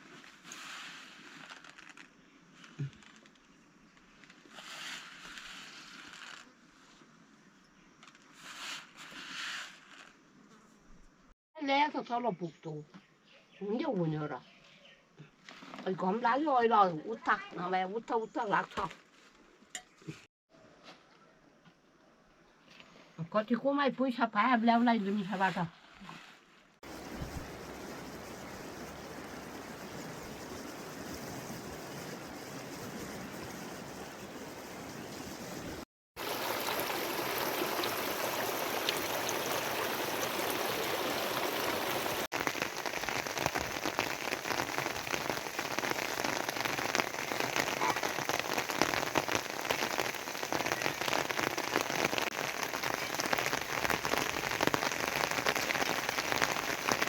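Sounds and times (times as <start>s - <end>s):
steady rain falling: 26.8s - 57.0s.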